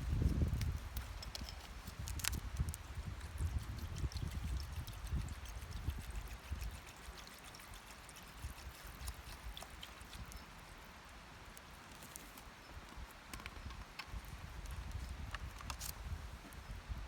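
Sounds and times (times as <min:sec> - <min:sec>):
campfire crackling and hissing: 0:00.0 - 0:03.6.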